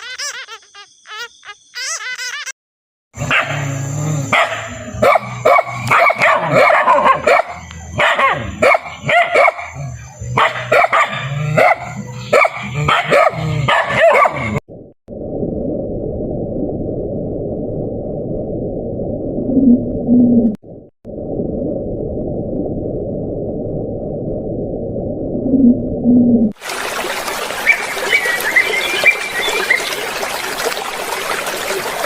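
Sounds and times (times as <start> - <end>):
dog barking and yipping: 3.3 - 3.6, 4.3 - 9.8, 10.4 - 14.6.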